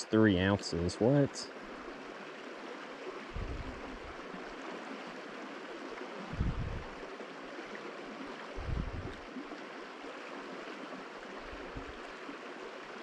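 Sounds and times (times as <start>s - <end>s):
river water rushing: 0.7s - 13.0s
low thump: 3.4s - 3.8s.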